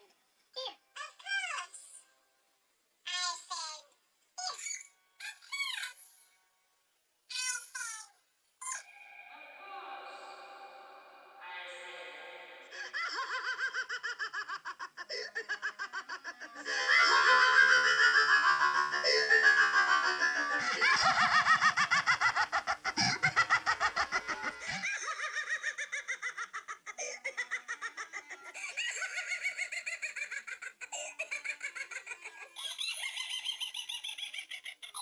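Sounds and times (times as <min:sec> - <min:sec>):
cartoon villain laughter: 0:12.7 - 0:35.0.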